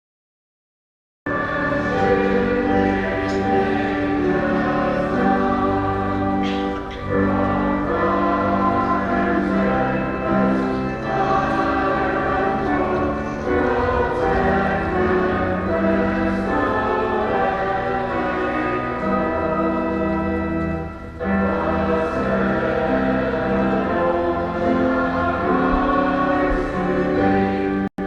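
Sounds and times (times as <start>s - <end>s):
choir singing held chords: 1.3s - 28.0s.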